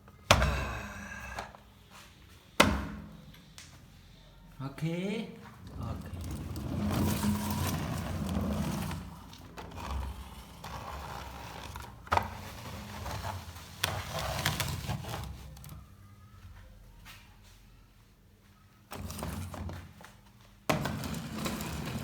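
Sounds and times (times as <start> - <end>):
toy cars rolling on hard floor: 5.6 - 15.8, 18.9 - 19.9, 20.7 - 22.0.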